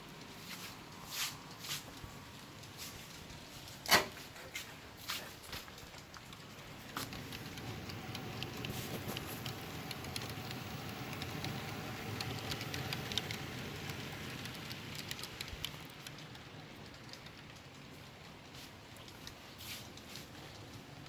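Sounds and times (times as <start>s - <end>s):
small irregular clicks: 0.0s - 21.0s
model train rumbling on track: 6.0s - 18.6s.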